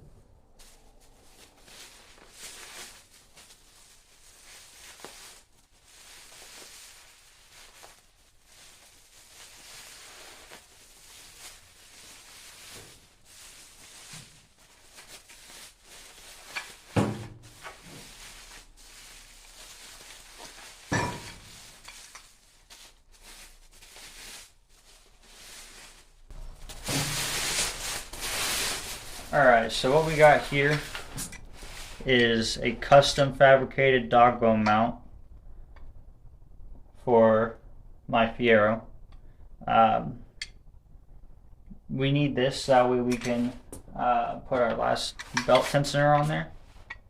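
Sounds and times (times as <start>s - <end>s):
packaging rustling and scraping: 0.6s - 33.0s.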